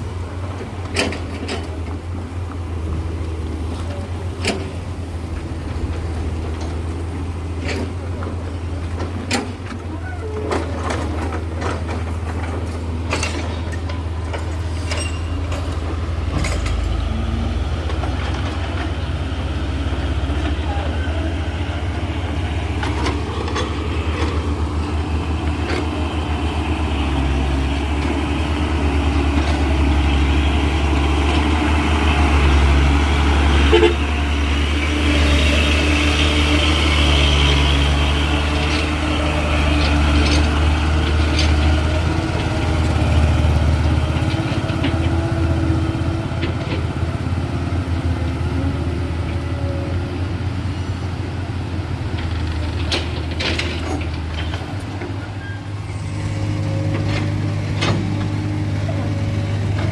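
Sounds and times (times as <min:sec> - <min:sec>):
diesel engines rumbling: 0:00.0 - 0:59.9
metal clanks: 0:10.4 - 0:17.1.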